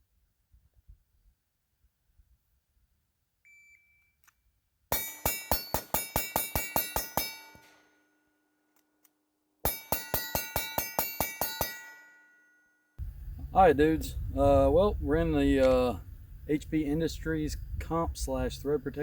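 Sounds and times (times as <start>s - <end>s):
short electronic beep: 3.5s - 4.2s
rapid pistol shots: 4.9s - 7.9s
metallic ringing: 4.9s - 8.1s, 9.6s - 13.0s.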